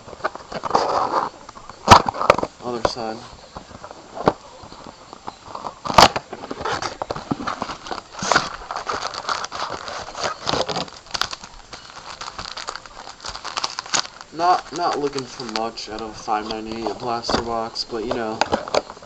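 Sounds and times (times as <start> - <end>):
packaging being torn and crinkled: 5.5 - 19.0.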